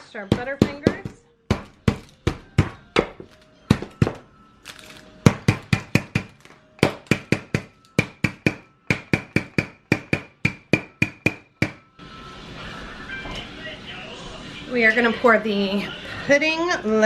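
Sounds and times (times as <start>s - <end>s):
candy bars being crushed: 0.4s - 8.2s.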